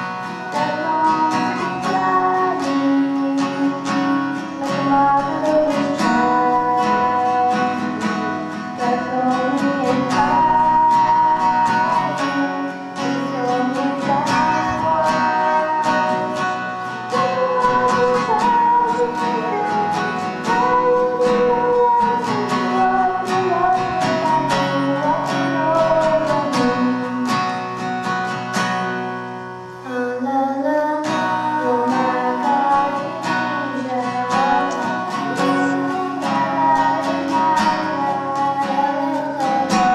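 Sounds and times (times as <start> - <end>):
person singing: 0.0 - 28.3, 29.8 - 39.9
strummed acoustic guitar: 0.0 - 39.9.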